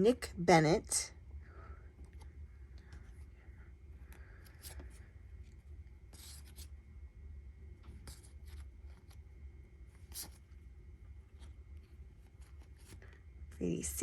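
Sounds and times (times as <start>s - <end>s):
low steady hum: 0.0s - 14.0s
cards rubbing swishes: 6.1s - 6.8s, 9.9s - 10.5s.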